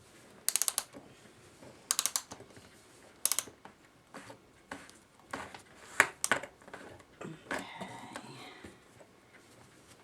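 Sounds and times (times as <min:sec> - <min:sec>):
clock mainspring ratchet clicking: 0:00.5 - 0:00.9, 0:01.9 - 0:02.4, 0:03.3 - 0:03.5.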